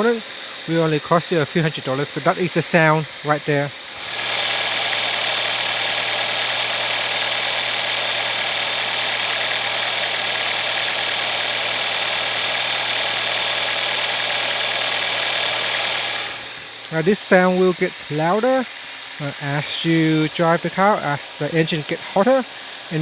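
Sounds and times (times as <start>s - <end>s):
high-pitched whistle and hiss: 0.0s - 3.8s, 16.8s - 23.0s
car engine idling: 0.0s - 23.0s.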